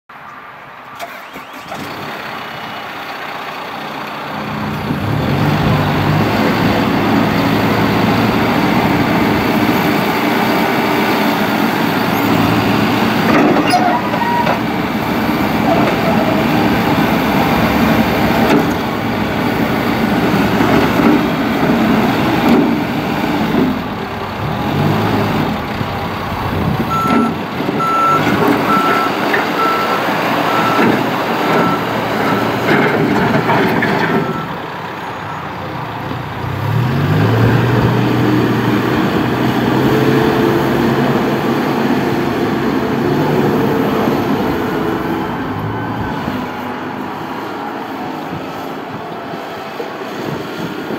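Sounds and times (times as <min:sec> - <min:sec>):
diesel engine running with clanking: 0:01.0 - 0:50.9
reversing alarm beeping: 0:26.9 - 0:32.6, 0:34.2 - 0:34.6.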